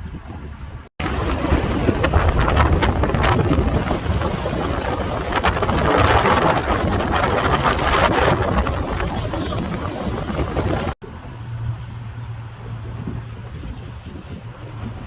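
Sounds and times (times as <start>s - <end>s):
wind buffeting microphone: 0.0s - 11.0s, 12.3s - 15.0s
low engine rumble: 0.0s - 15.0s.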